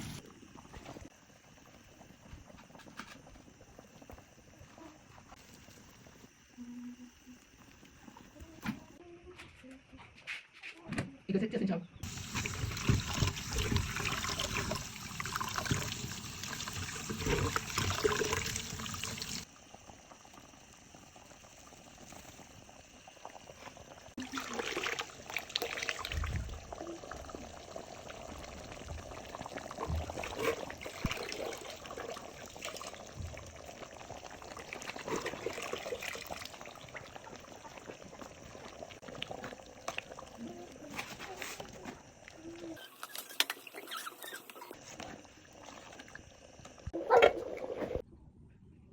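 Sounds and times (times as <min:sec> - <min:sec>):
liquid pouring and splashing: 0:12.0 - 0:48.0.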